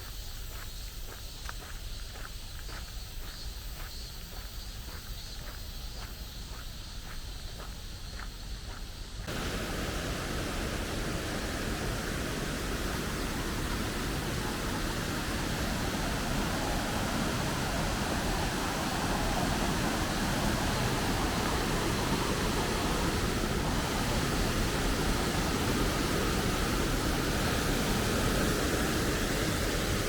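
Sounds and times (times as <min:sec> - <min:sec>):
footsteps on forest path: 0:00.4 - 0:24.1
steady rushing noise: 0:09.3 - 0:30.0.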